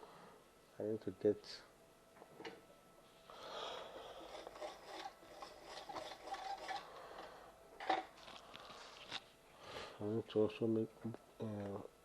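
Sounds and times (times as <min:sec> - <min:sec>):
tools scraping on bench: 0:04.0 - 0:07.3.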